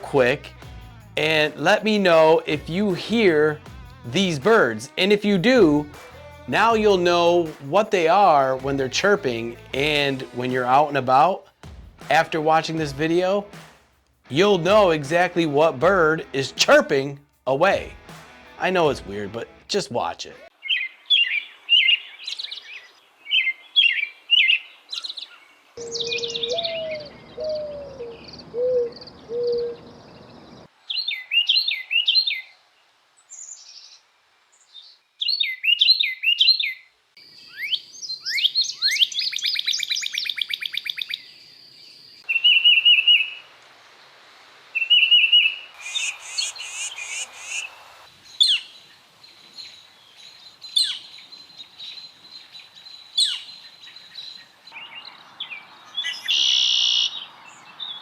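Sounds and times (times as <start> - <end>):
fast bird trill: 25.8 - 29.8, 44.8 - 47.7, 56.0 - 57.3
whistled bird phrases: 25.8 - 29.9, 56.0 - 57.3
low hooting bird calls: 25.8 - 32.5, 44.8 - 47.8, 53.2 - 58.0
short bird chirps: 44.8 - 47.8, 54.7 - 57.3.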